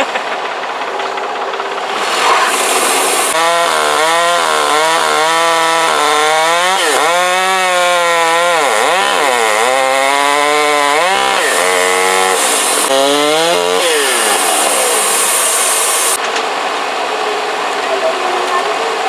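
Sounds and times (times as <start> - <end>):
hissing noise: 1.7 - 3.4, 14.0 - 16.2
gasoline saw cutting wood: 1.8 - 16.2.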